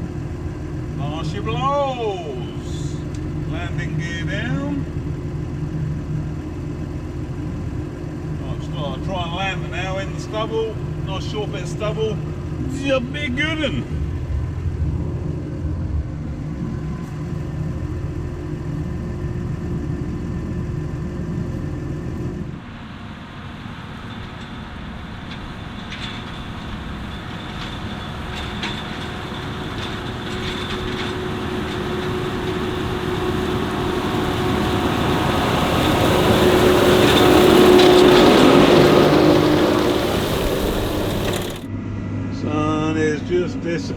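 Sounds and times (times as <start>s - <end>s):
motors running: 22.7s - 41.7s.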